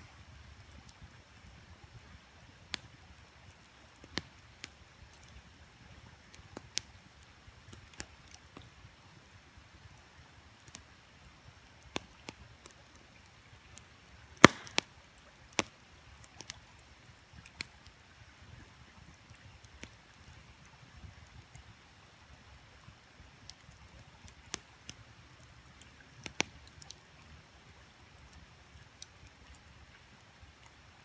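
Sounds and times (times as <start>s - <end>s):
campfire crackling: 0.0s - 31.0s
fire pops and snaps: 2.6s - 5.6s, 6.3s - 8.8s, 10.5s - 18.0s, 18.6s - 21.7s, 23.4s - 31.0s.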